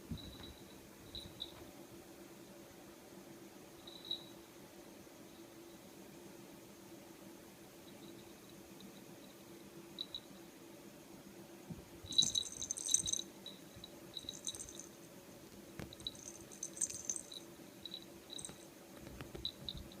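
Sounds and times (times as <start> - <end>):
toy ball rattling and jingling: 12.1 - 13.3, 14.2 - 15.0, 15.9 - 17.4, 18.3 - 18.6.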